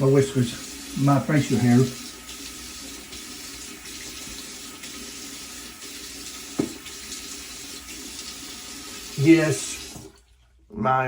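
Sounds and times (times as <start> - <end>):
tap water running into sink: 0.0 - 10.3
water splashing on face: 1.9 - 8.5
short knock: 6.6 - 6.8.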